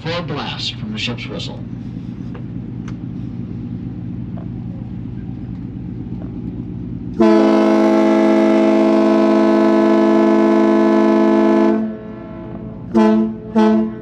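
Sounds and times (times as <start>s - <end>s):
low steady rumble: 0.0s - 14.0s
boat whistle blast: 7.2s - 14.0s.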